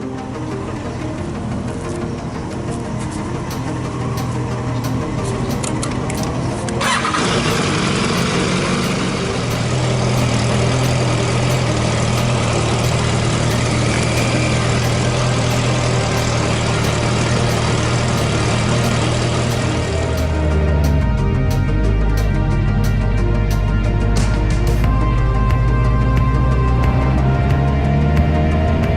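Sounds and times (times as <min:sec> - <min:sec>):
motorcycle engine running: 0:00.4 - 0:28.9.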